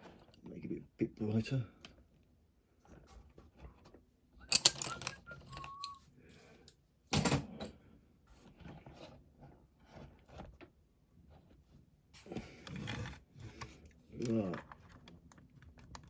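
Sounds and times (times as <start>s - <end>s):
clicks and rustles of handling: 2.8s - 6.8s, 8.4s - 16.0s
brief squeak: 4.4s - 6.0s.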